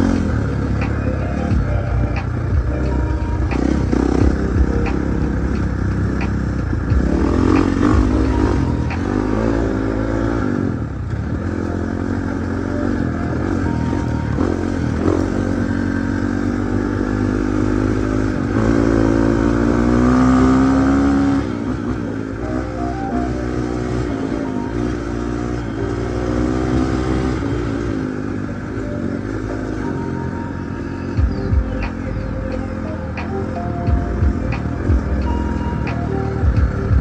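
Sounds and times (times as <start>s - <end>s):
dirt bike engine revving: 0.0s - 37.0s.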